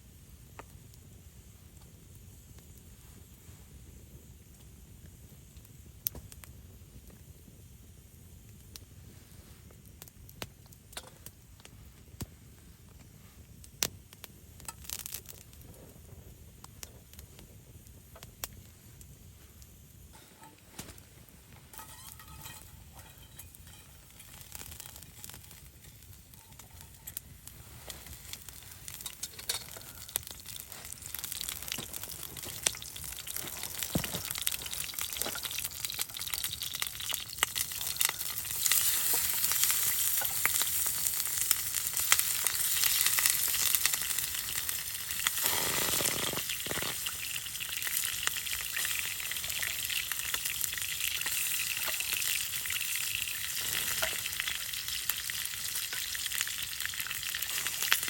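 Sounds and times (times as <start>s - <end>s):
sizzling hiss with crackling: 0.0s - 58.0s.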